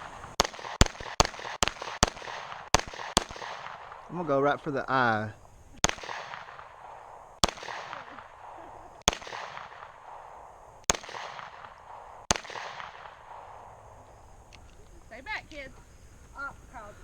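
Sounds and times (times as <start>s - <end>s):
pistol shots with echo: 0.0s - 14.6s.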